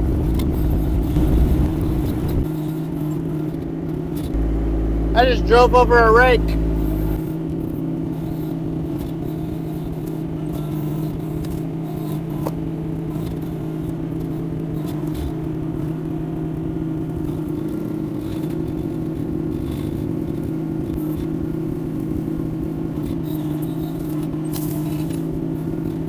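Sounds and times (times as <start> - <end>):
diesel excavator engine running: 4.4 - 7.2.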